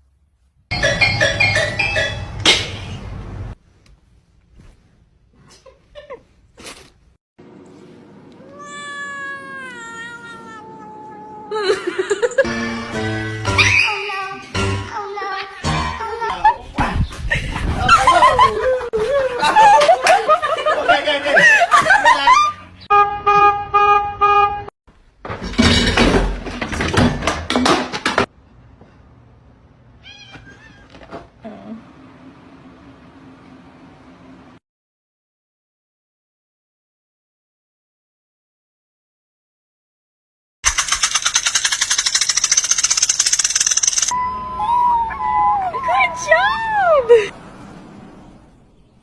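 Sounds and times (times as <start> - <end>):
cat meowing: 8.4 - 11.6, 30.0 - 30.9
horn honking blasts: 22.9 - 24.7
rushing clattering noise: 40.6 - 44.1.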